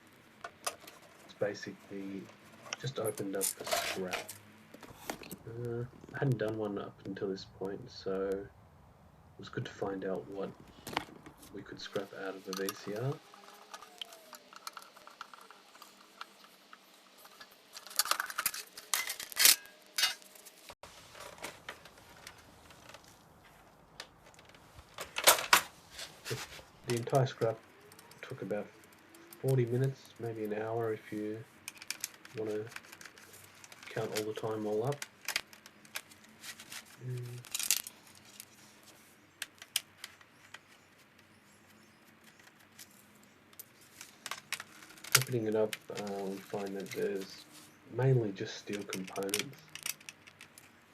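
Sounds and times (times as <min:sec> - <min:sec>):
small steel parts clicking: 0:12.5 - 0:20.4, 0:31.6 - 0:38.7, 0:48.7 - 0:50.8.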